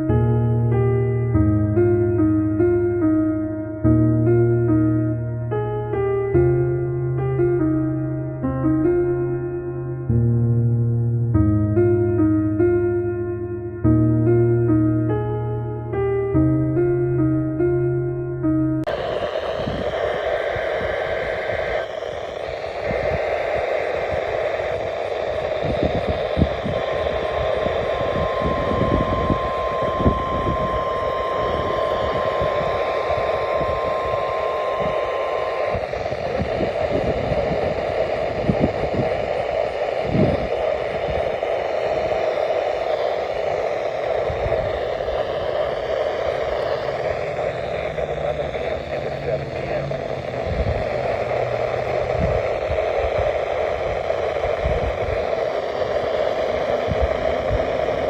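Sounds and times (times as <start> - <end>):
buzzy data tones: 0.0 - 0.7, 18.9 - 58.0
radio static hiss: 18.9 - 58.0
steady warning alarm tone: 18.9 - 58.0.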